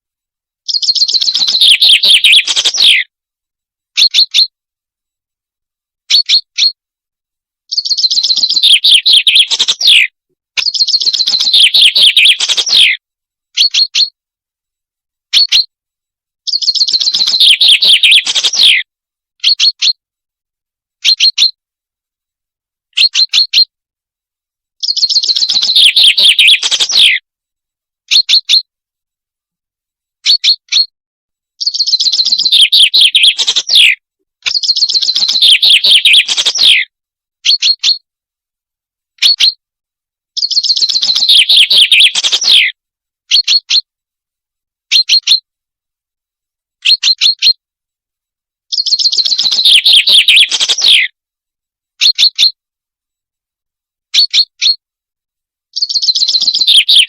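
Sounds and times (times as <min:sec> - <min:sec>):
recorded bird call: 0:00.6 - 0:03.1, 0:03.9 - 0:04.6, 0:06.0 - 0:06.8, 0:07.7 - 0:14.2, 0:15.3 - 0:15.7, 0:16.4 - 0:20.0, 0:21.0 - 0:21.6, 0:22.9 - 0:23.7, 0:24.8 - 0:27.2, 0:28.1 - 0:28.7, 0:30.2 - 0:30.9, 0:31.6 - 0:38.1, 0:39.2 - 0:39.6, 0:40.3 - 0:43.9, 0:44.9 - 0:45.5, 0:46.8 - 0:47.6, 0:48.7 - 0:51.2, 0:52.0 - 0:52.6, 0:54.1 - 0:54.8, 0:55.7 - 0:57.0
short sharp bird chirps: 0:00.6 - 0:03.1, 0:04.0 - 0:04.5, 0:06.1 - 0:06.8, 0:07.7 - 0:14.2, 0:15.3 - 0:15.7, 0:16.4 - 0:20.0, 0:21.0 - 0:21.6, 0:22.9 - 0:23.7, 0:24.8 - 0:27.2, 0:28.1 - 0:28.7, 0:30.2 - 0:30.9, 0:31.6 - 0:38.0, 0:39.2 - 0:39.6, 0:40.4 - 0:43.9, 0:44.9 - 0:45.4, 0:46.8 - 0:47.6, 0:48.7 - 0:51.1, 0:52.0 - 0:52.6, 0:54.1 - 0:54.8, 0:55.7 - 0:57.0.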